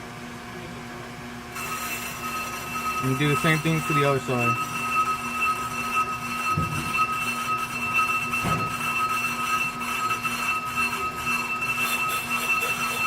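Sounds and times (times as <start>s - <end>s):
brake lathe high-pitched whine: 1.5s - 13.0s.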